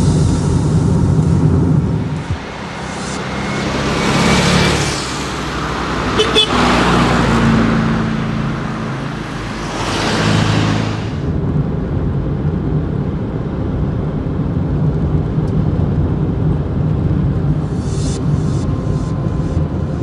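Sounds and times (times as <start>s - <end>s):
steady low rumble: 0.0s - 6.1s, 11.2s - 20.0s
car driving past: 2.0s - 11.4s.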